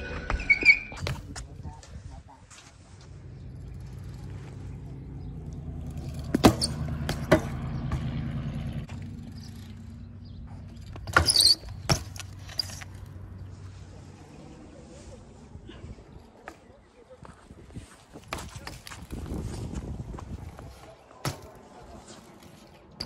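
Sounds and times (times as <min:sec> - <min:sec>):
bike scraping: 0:02.4 - 0:16.7, 0:17.7 - 0:23.0
bike tyres rolling: 0:02.5 - 0:23.0
bike landing knocks: 0:05.9 - 0:08.3, 0:10.6 - 0:13.0, 0:18.2 - 0:19.3, 0:20.5 - 0:22.3.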